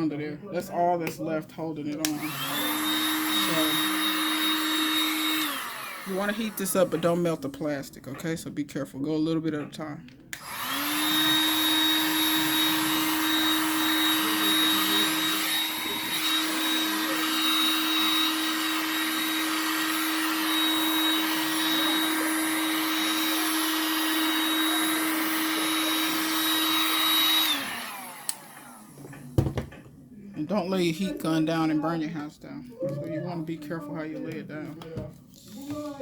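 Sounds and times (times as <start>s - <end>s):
heat gun fan whine: 2.0s - 7.4s, 10.3s - 29.7s.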